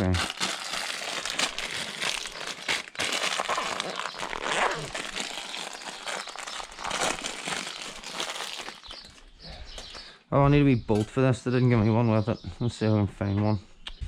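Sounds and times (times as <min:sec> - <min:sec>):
packaging crinkling: 0:00.0 - 0:09.3.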